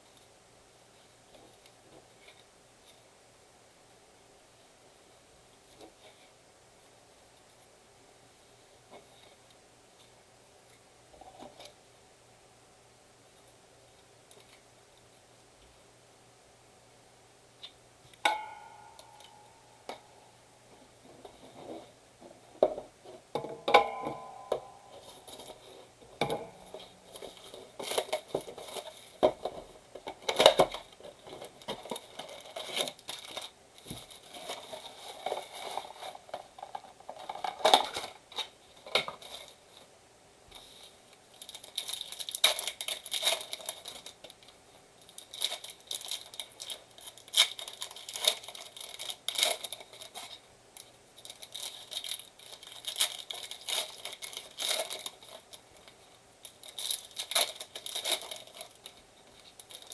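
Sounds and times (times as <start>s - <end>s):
plastic wrap crinkling and ripping: 24.9s - 39.7s, 41.3s - 59.9s.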